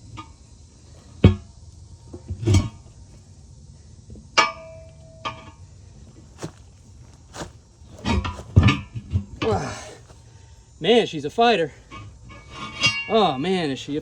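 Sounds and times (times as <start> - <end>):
metal tire irons clanking: 6.2 - 10.2.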